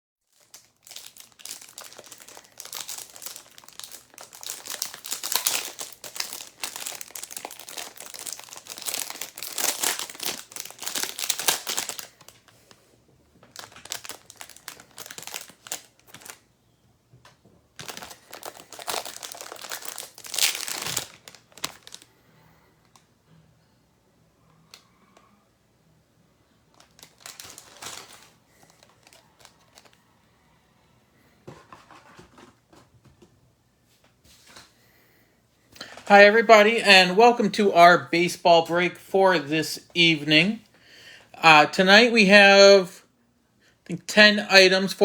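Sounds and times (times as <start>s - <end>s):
plastic wrapping crinkling: 0.3s - 16.4s, 17.2s - 22.1s, 26.7s - 30.0s.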